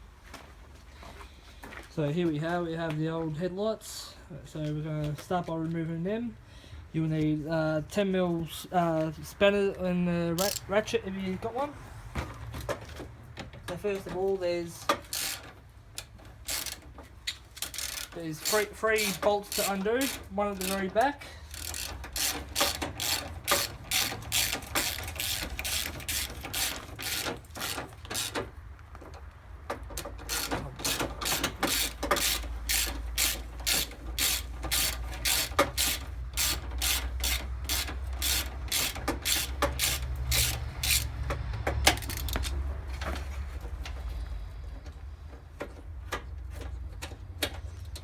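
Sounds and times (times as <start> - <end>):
ratchet clicking: 10.4 - 10.7, 14.9 - 28.5, 30.0 - 42.6.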